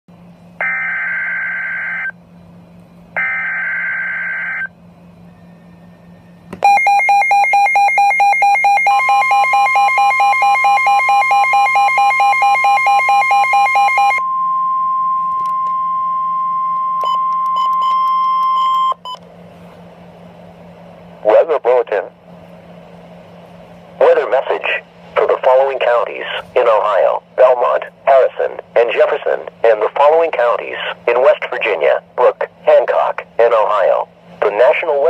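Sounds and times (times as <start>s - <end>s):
low steady hum: 0.1s - 35.0s
steady warning tone: 0.4s - 19.2s
pulsing beeping alarm tone: 0.6s - 2.2s, 3.2s - 19.1s.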